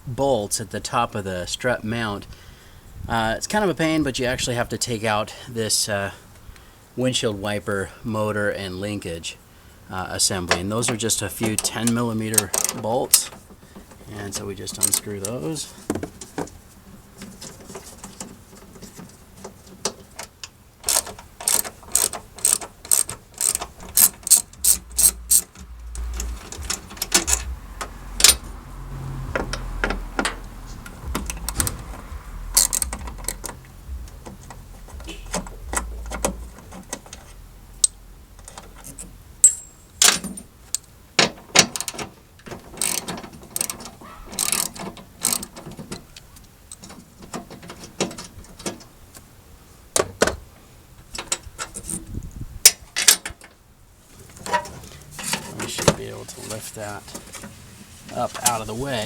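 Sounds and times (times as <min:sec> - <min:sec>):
hand ratchet clicking: 0:11.5 - 0:12.8, 0:20.8 - 0:28.6, 0:29.3 - 0:40.8, 0:41.6 - 0:45.8.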